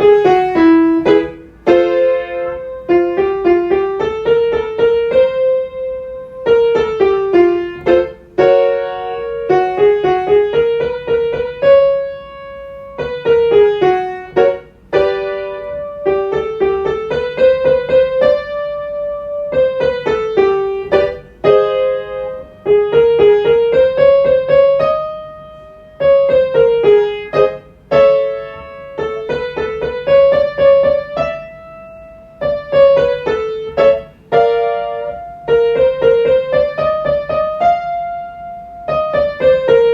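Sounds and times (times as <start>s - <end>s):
piano scale runs: 0.0s - 39.9s.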